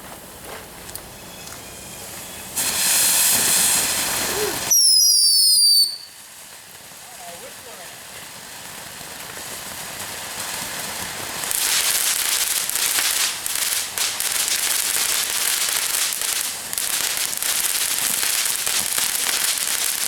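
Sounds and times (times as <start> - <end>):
firework fountains crackling hiss: 0.0 - 20.0.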